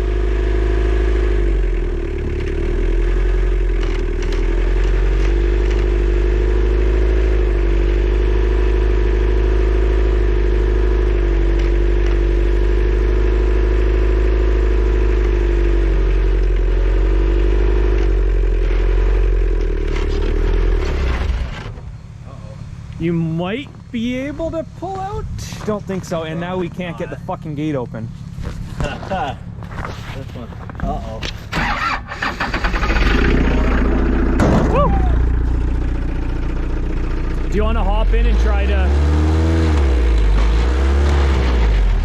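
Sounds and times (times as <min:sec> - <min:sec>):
diesel engine at high idle: 0:00.0 - 0:20.1, 0:21.1 - 0:39.4
clattering and scraping: 0:28.1 - 0:31.7.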